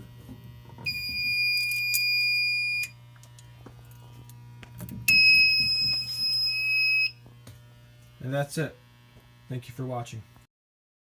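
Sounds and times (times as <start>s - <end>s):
fire alarm horn tone: 0.9s - 3.0s, 5.1s - 7.2s.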